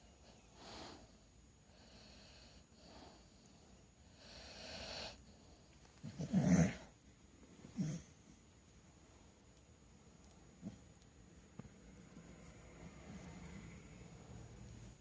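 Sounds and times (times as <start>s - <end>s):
dog snoring: 4.1s - 5.2s, 6.0s - 6.9s, 7.7s - 8.2s.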